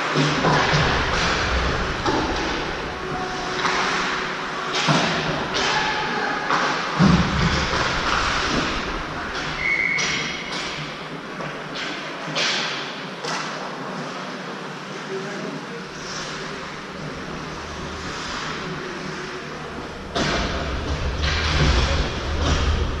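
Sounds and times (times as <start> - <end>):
skates scraping ice: 0.0 - 12.6, 15.9 - 23.0
puck and players hitting boards: 4.7 - 13.6.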